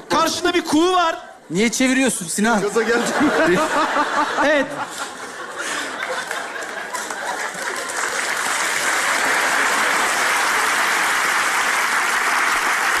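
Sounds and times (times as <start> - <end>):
audience applauding: 5.0 - 13.0.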